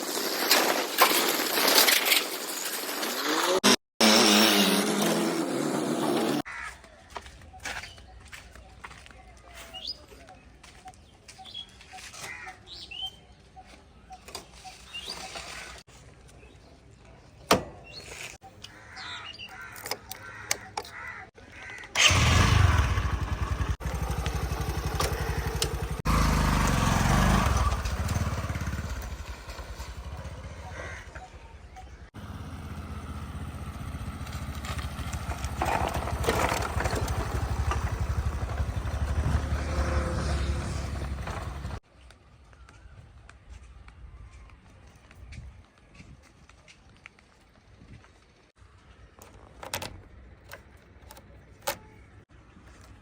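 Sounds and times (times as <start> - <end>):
vehicle engine revving: 22.0 - 30.7, 32.2 - 41.8.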